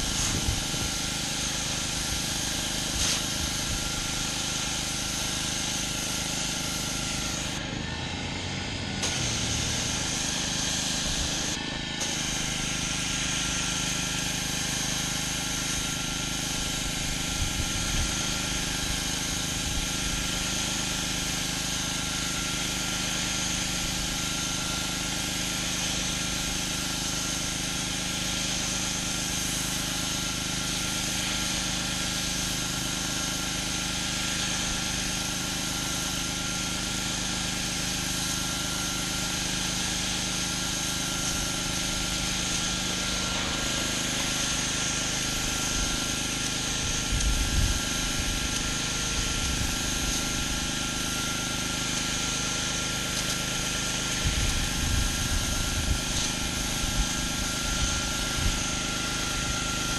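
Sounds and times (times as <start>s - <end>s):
pressure washer engine running: 0.0s - 59.9s
water spraying onto concrete: 0.0s - 59.9s.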